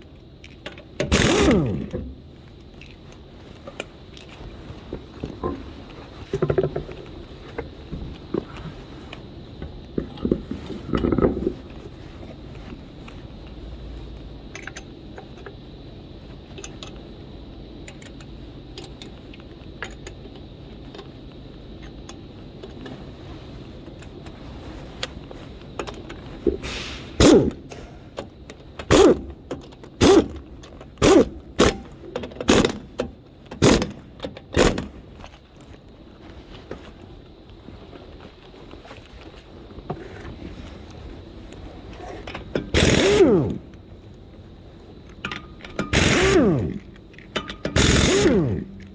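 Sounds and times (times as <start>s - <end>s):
impact wrench bursts: 1.0s - 2.1s, 26.6s - 28.0s, 28.8s - 29.4s, 30.0s - 30.4s, 31.0s - 31.9s, 32.5s - 33.0s, 33.6s - 35.0s, 42.7s - 43.8s, 45.3s - 48.9s
metal nuts and tools clinking: 42.2s - 43.6s, 45.2s - 48.9s.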